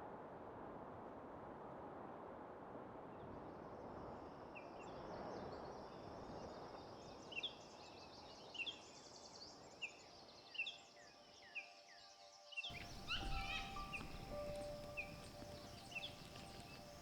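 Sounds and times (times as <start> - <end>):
birds chirping: 12.7 - 17.0.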